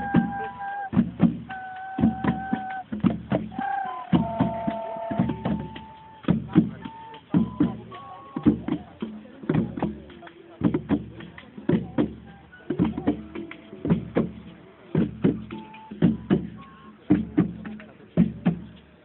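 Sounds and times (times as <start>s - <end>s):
held melody notes: 0.0s - 8.4s
hand drums playing: 0.0s - 18.8s.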